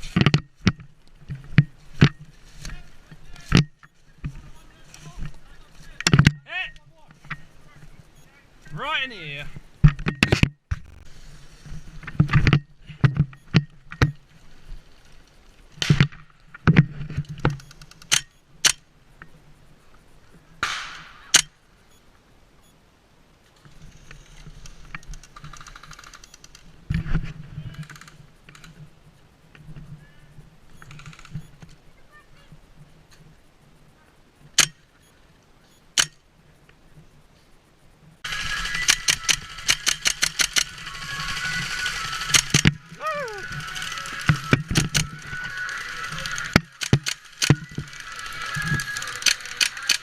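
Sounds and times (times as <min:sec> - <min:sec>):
airsoft gun shots: 0:20.6 - 0:21.5.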